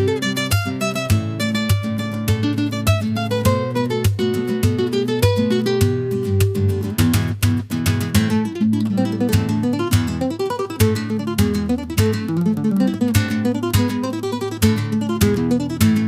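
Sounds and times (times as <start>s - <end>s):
acoustic guitar music: 0.0s - 16.0s.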